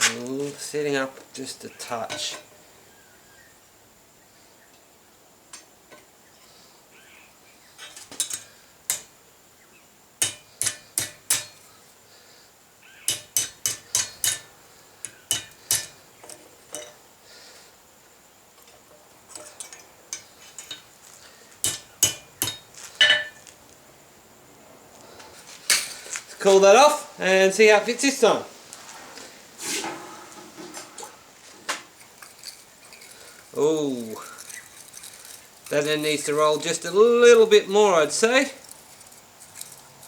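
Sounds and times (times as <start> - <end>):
hammer striking steel on anvil: 10.2 - 11.6, 13.1 - 14.5, 15.1 - 16.0, 21.6 - 23.4.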